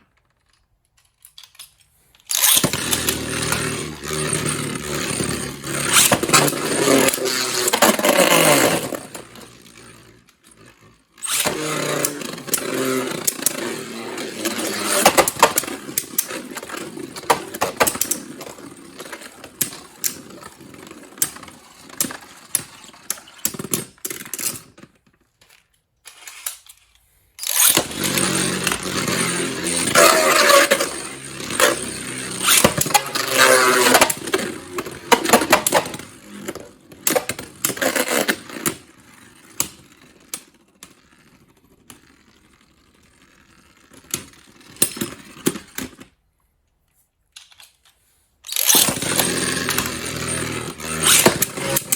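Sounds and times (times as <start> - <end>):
spinning tops launching: 2.3 - 9.8, 11.2 - 23.7, 27.4 - 36.1, 48.5 - 51.9
spinning tops whirring: 2.3 - 10.1, 11.2 - 23.7, 27.4 - 38.4, 48.5 - 51.9.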